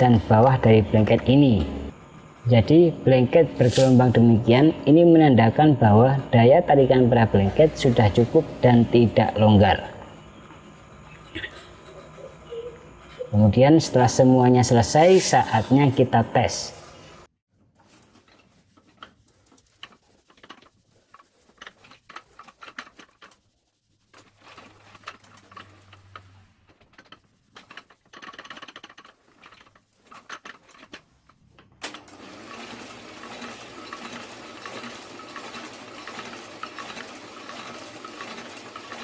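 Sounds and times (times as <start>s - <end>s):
printing press clatter: 24.2s - 31.2s, 31.8s - 39.0s.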